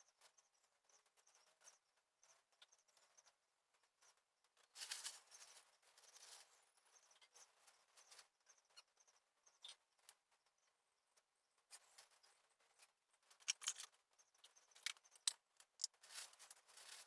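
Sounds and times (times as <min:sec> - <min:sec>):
scraping rustle: 0:15.8 - 0:17.0.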